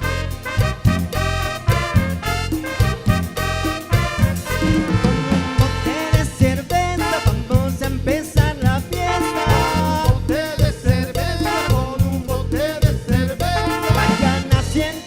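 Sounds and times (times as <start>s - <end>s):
latin dance band playing: 0.0s - 15.0s.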